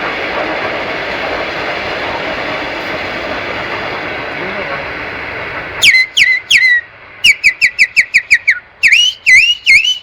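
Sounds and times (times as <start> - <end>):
passing electric train: 0.0 - 10.0
man whistling birdsong: 5.8 - 10.0.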